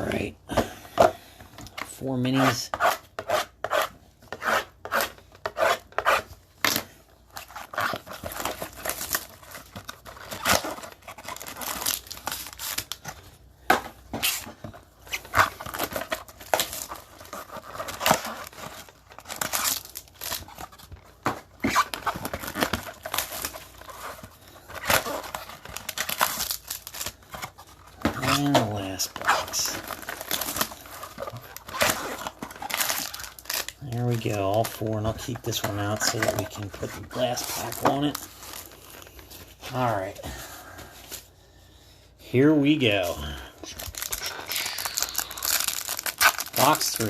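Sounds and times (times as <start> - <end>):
plastic wrap crinkling and tearing: 6.1 - 13.4, 14.2 - 40.1, 42.8 - 47.0.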